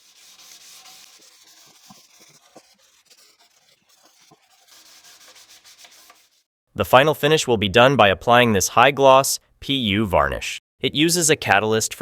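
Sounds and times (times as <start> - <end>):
sandpaper rubbing on wood: 0.0 - 6.5.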